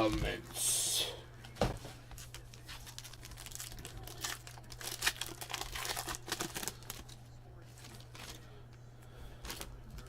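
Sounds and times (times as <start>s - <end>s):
low electrical hum: 0.0s - 10.0s
wrapper packaging crinkling: 2.2s - 8.4s, 9.4s - 10.0s.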